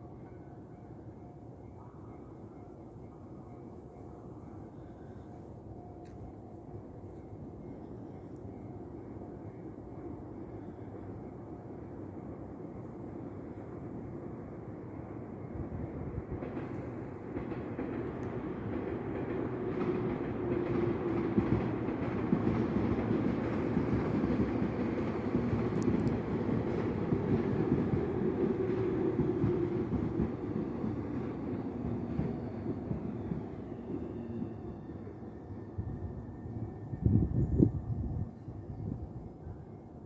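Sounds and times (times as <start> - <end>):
electric train passing: 0.0 - 40.0
train wheels clicking: 16.4 - 33.5.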